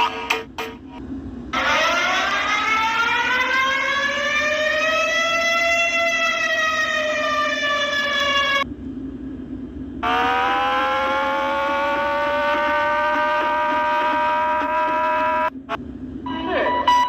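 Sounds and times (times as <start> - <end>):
siren wailing: 1.5 - 8.7, 10.0 - 17.0.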